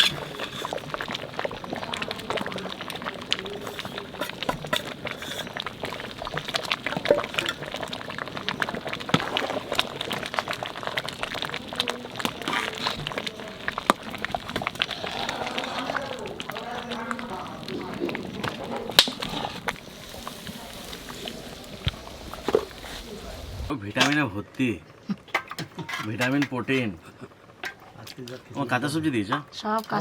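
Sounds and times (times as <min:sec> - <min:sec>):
food bubbling and popping in pot: 0:00.0 - 0:24.2, 0:25.2 - 0:30.0.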